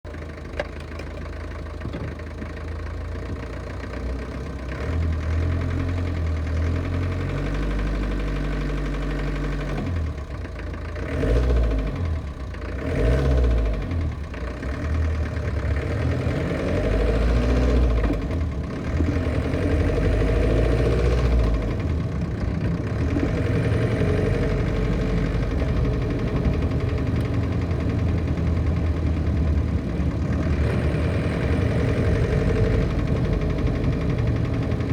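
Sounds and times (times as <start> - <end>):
engine running with metallic knock: 0.1 - 3.8.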